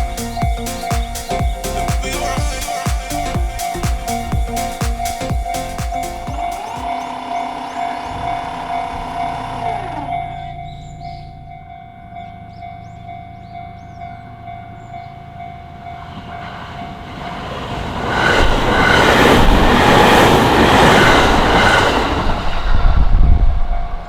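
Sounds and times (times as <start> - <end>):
train passing: 0.0 - 12.2, 13.1 - 24.0
level-crossing bell dinging: 0.0 - 16.4.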